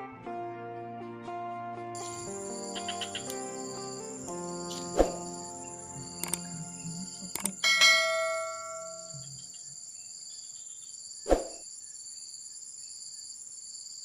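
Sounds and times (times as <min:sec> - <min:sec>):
insects chirping: 0:02.0 - 0:14.0
ringing tone: 0:06.1 - 0:09.4.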